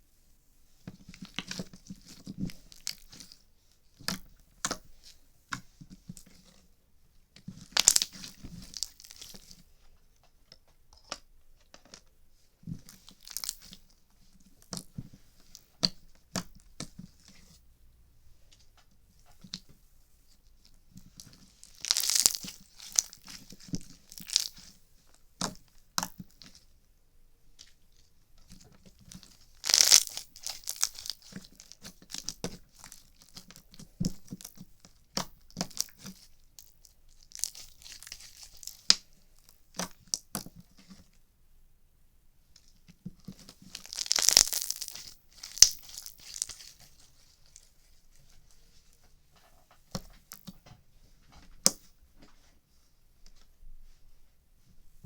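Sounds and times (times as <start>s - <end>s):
crackling pops and clicks: 7.7s - 9.4s, 21.6s - 24.7s, 29.1s - 40.5s, 43.3s - 46.8s.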